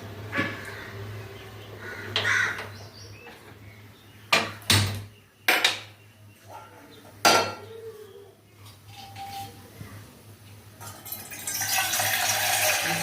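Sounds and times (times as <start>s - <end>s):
metal pots clanking: 5.5s - 7.7s, 8.8s - 9.6s, 10.8s - 13.0s.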